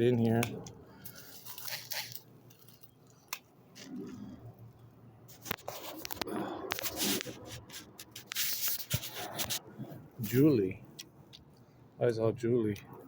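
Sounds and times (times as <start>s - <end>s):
leaves and twigs rustling: 0.3s - 4.4s.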